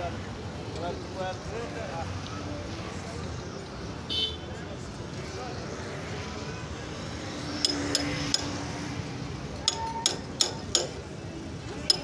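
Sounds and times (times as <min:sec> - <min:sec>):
steady background noise: 0:00.0 - 0:12.0
hand tools clinking on metal: 0:11.8 - 0:12.0.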